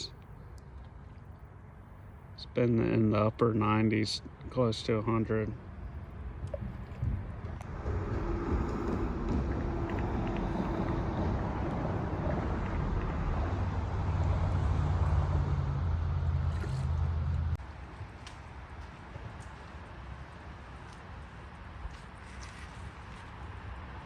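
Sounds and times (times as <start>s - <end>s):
motor engine humming: 5.6s - 17.6s
wind noise: 5.6s - 18.2s.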